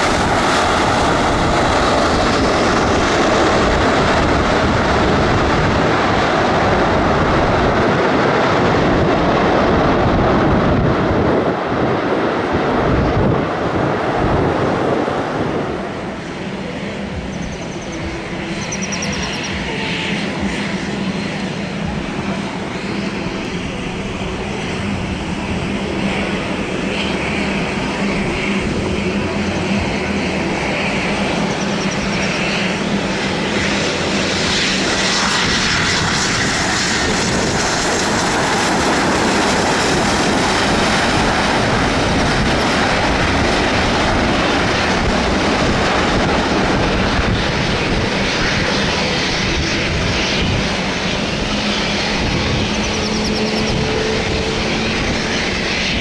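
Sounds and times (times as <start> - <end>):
aircraft engines running: 0.0 - 56.0.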